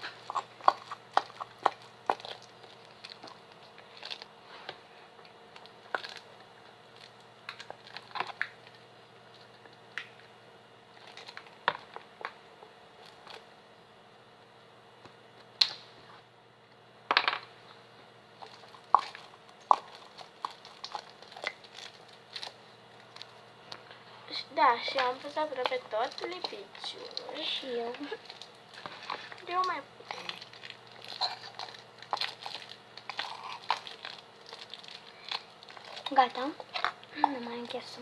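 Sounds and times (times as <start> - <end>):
plastic bottles crinkling and clicking: 24.8 - 37.8.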